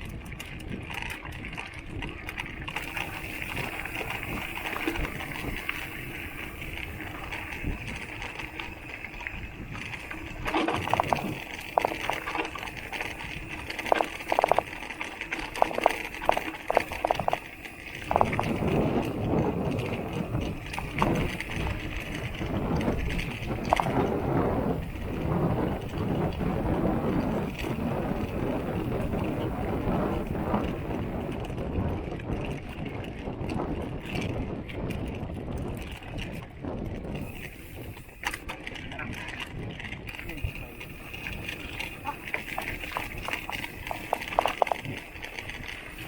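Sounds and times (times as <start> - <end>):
bike tyre and frame noise: 0.0 - 46.0
water bottle cage rattling: 9.8 - 19.1, 40.8 - 46.0.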